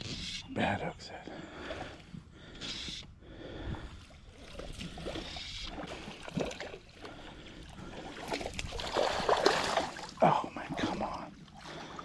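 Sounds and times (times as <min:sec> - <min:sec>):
creek water gurgling and splashing: 0:03.7 - 0:12.0.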